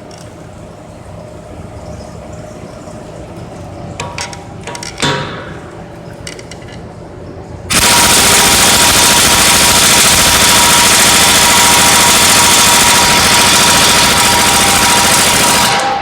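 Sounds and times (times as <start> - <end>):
impact wrench whine: 7.7 - 16.0.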